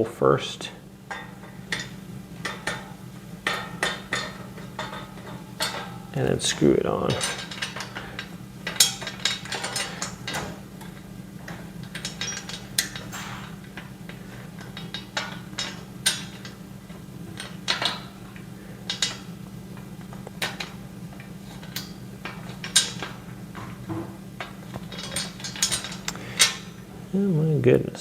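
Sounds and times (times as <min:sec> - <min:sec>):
metal screws and shelf parts clinking: 0:07.0 - 0:10.9, 0:11.8 - 0:13.7, 0:24.8 - 0:26.7.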